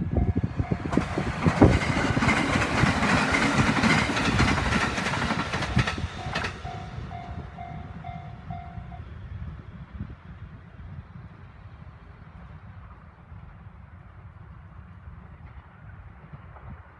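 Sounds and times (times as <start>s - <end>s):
crossing warning bell ringing: 0.1s - 2.2s, 3.6s - 9.1s
train wheel clacks over rails: 0.8s - 7.2s.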